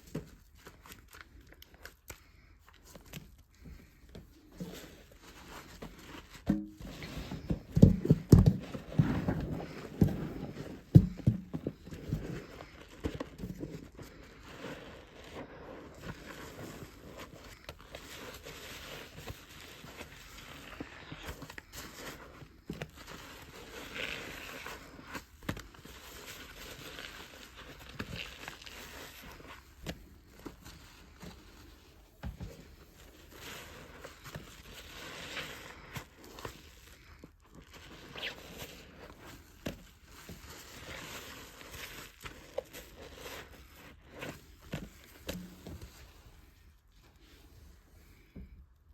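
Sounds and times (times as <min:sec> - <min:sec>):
soapy sponge squeezed by hand: 0:25.9 - 0:29.7, 0:33.2 - 0:36.8, 0:37.6 - 0:39.5.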